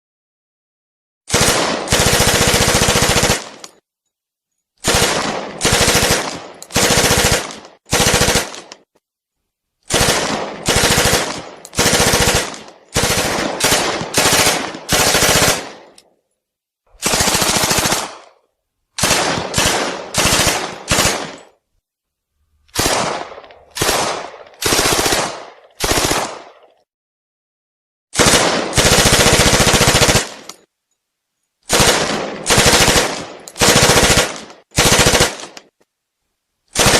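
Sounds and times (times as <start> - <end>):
submachine gun firing bursts: 1.3 - 3.7, 4.8 - 8.9, 9.9 - 15.9, 17.0 - 18.3, 19.0 - 21.5, 22.8 - 26.6, 28.2 - 30.6, 31.7 - 35.7.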